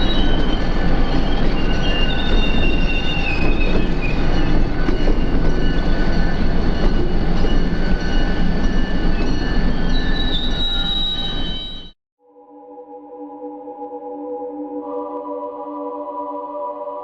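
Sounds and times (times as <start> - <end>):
train wheels rumbling on rail: 0.0 - 11.9
high wheel squeals: 0.0 - 12.0.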